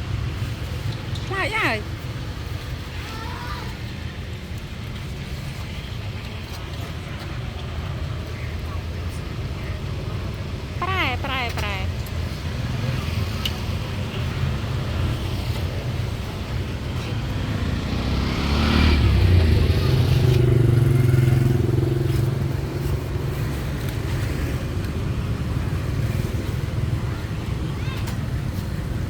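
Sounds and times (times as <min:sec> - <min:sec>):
traffic rumble: 0:00.0 - 0:29.0
vehicle passing close by: 0:12.6 - 0:27.2.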